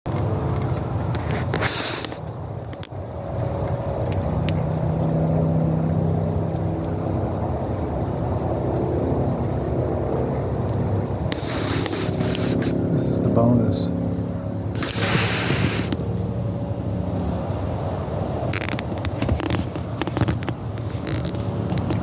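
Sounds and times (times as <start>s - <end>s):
low mechanical hum: 0.1s - 22.0s
brief rustling: 11.2s - 12.8s.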